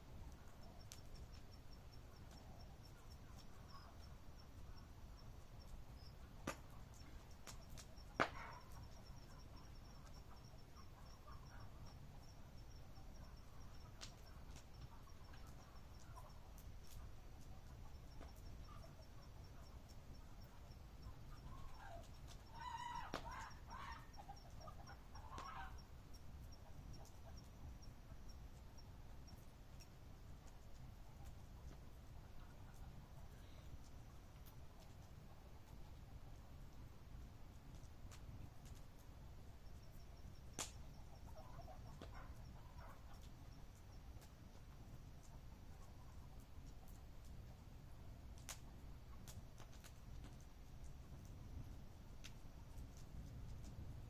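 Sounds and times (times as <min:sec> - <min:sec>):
campfire pops: 0:05.2 - 0:10.3, 0:40.4 - 0:41.0, 0:48.3 - 0:53.9.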